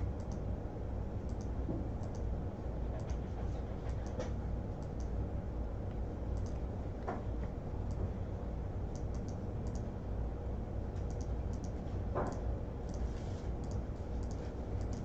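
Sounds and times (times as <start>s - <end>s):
steady low hum: 0.0s - 15.0s
light clicks: 1.3s - 2.2s, 8.9s - 9.9s, 11.0s - 13.0s, 13.6s - 15.0s.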